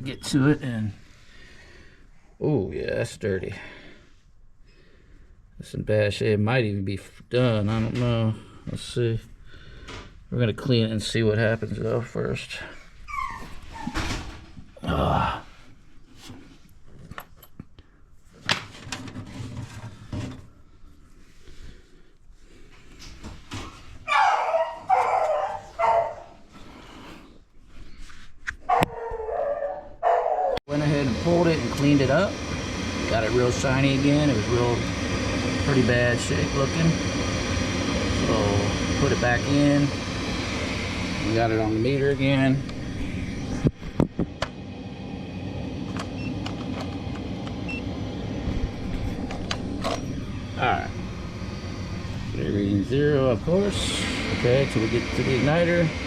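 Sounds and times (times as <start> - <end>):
furnace fan humming: 0.0 - 28.1, 28.8 - 56.0
dog barking: 24.1 - 26.4, 28.7 - 30.6.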